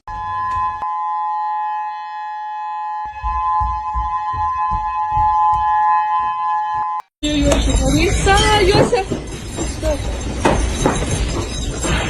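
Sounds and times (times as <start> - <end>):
two-tone emergency alarm: 0.1 - 7.1.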